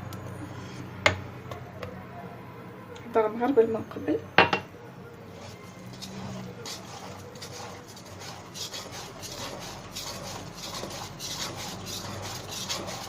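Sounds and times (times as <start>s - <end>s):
flour scratching through sieve: 5.3s - 13.0s.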